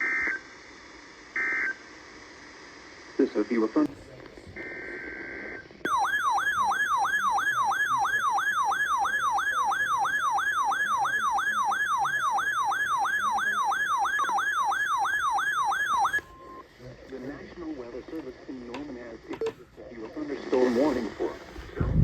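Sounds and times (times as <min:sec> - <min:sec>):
electronic alert siren: 0:04.7 - 0:16.6.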